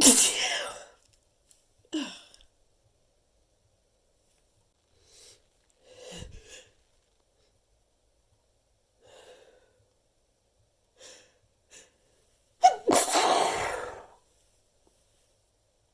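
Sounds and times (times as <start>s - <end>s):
person sneezing: 0.0s - 0.9s, 12.6s - 14.1s
person gasping in-breaths: 12.7s - 14.1s.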